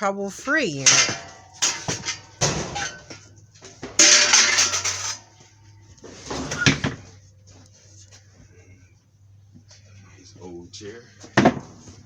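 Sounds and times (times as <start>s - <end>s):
household items clattering: 0.5s - 5.4s.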